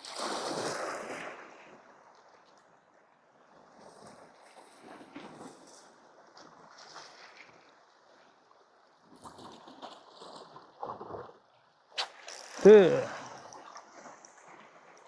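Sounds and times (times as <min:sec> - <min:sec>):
man's short exclamation: 0:12.5 - 0:13.3.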